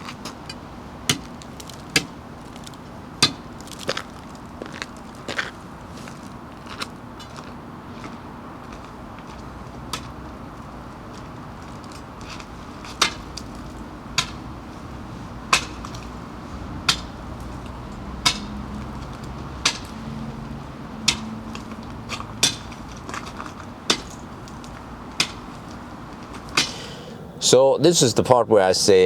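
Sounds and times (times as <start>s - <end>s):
sharp knocks: 12.8s - 14.8s, 15.4s - 16.1s, 16.8s - 20.2s, 21.0s - 27.0s.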